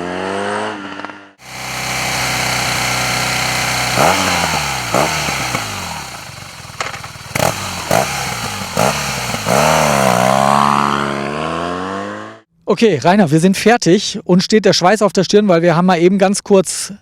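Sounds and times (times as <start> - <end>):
motorcycle engine revving: 0.0 - 12.5
exhaust cracks: 0.8 - 11.4.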